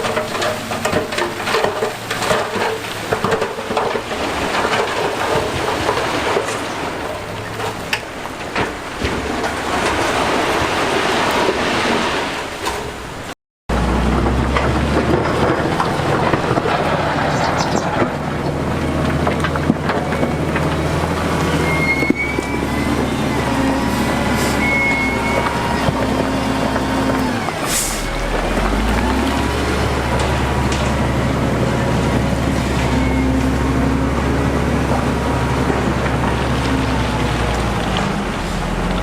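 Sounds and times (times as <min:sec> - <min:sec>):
diesel construction machinery running: 0:00.0 - 0:11.7, 0:13.7 - 0:39.0
short high squeals: 0:21.5 - 0:22.8, 0:23.7 - 0:25.7.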